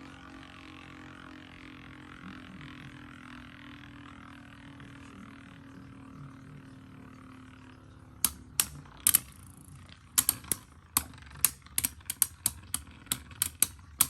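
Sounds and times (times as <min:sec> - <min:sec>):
sharp irregular clicks: 0:08.2 - 0:14.0
spinning tops whirring: 0:08.2 - 0:14.0.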